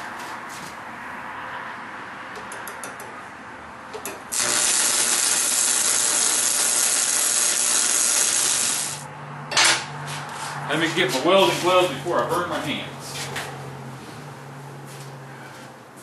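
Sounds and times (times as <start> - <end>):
welding arc hissing: 4.3 - 9.1.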